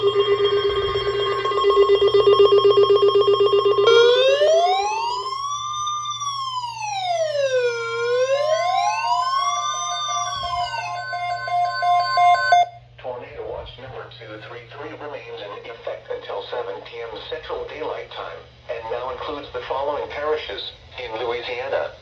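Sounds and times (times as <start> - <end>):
beeping tone: 0.0 - 6.4, 7.8 - 12.8
siren wail rising and falling: 0.0 - 12.8
steady tone: 0.0 - 12.8
buzzing alarm: 0.0 - 13.0.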